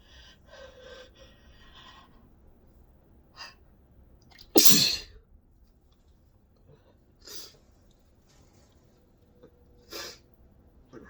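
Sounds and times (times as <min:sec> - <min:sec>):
person sneezing: 0:04.6 - 0:05.1.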